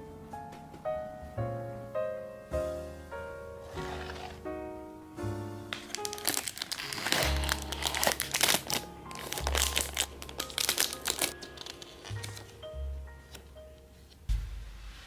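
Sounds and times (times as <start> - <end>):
plastic packaging crinkling: 3.7 - 4.4, 5.7 - 12.7.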